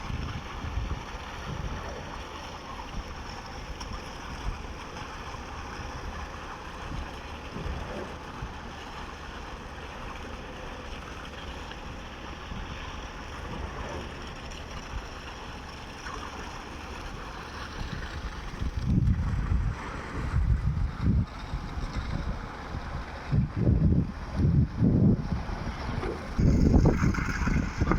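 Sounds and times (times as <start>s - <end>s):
wind buffeting microphone: 0.0s - 2.2s, 17.7s - 27.9s
concrete pump mechanical drone: 0.0s - 27.9s.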